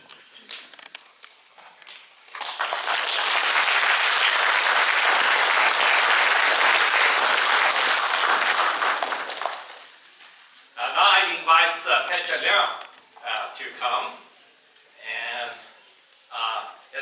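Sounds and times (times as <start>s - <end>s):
congregation applauding: 2.3s - 10.0s.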